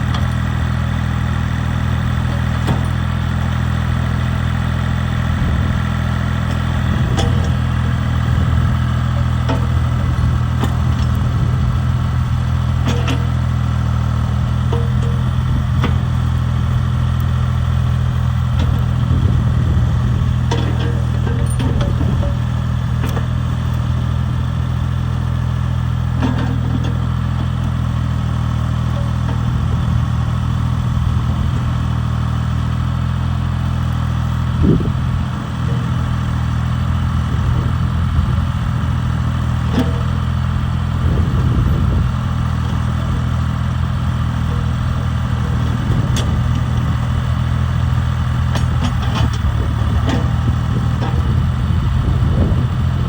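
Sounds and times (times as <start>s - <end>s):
excavator engine running: 0.0s - 53.0s.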